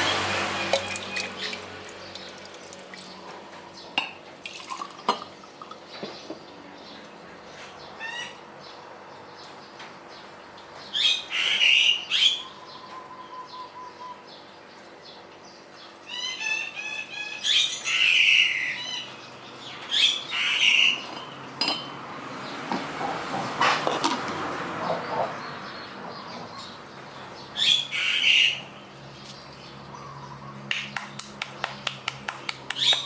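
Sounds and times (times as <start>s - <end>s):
bird squawking and chattering: 7.9s - 8.5s, 16.0s - 19.2s, 19.9s - 21.2s, 27.6s - 28.7s.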